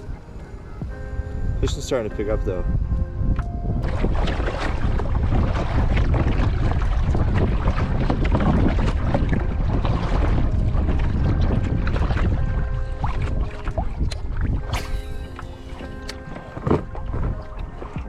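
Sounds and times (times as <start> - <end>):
wind buffeting microphone: 0.0 - 18.0
water crackling around kayak: 1.7 - 18.0.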